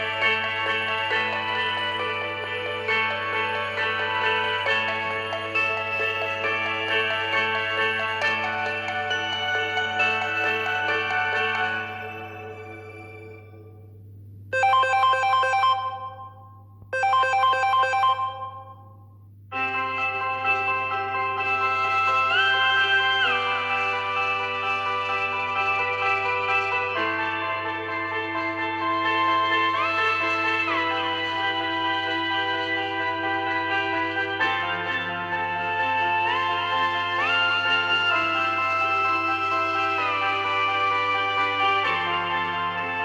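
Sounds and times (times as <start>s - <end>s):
electronic ringtone melody: 0.0s - 13.8s, 14.6s - 18.8s, 19.5s - 43.0s.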